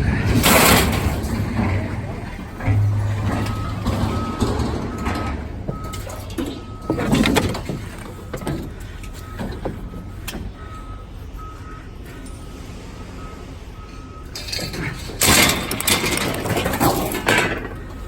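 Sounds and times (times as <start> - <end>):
metal knocks and clanks: 0.0 - 10.6, 14.4 - 18.0
low engine rumble: 0.0 - 18.0
reversing alarm beeping: 2.4 - 18.0.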